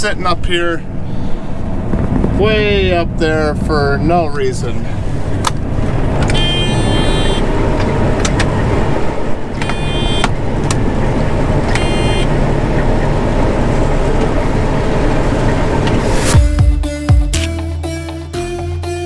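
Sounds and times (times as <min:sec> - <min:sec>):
combine harvester engine drone: 0:00.0 - 0:16.5
high steady tone: 0:06.3 - 0:07.8.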